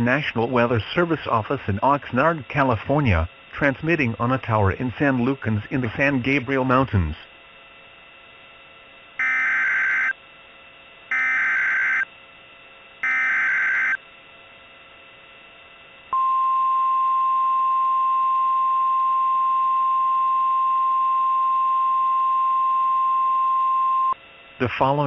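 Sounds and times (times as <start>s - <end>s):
digital data tone bursts: 9.2s - 10.2s, 11.1s - 12.1s, 13.0s - 14.0s
steady alarm tone: 9.2s - 10.2s, 11.1s - 12.2s, 13.0s - 14.0s.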